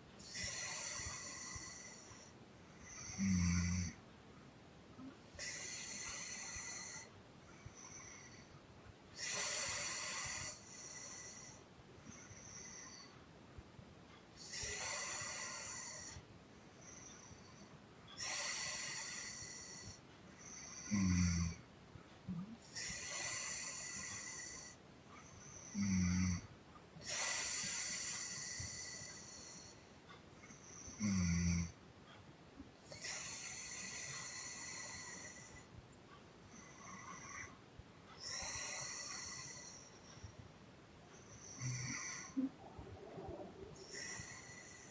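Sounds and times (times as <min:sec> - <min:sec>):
short low snores: 0:03.0 - 0:04.0, 0:25.7 - 0:29.0, 0:30.9 - 0:31.8, 0:41.3 - 0:42.6.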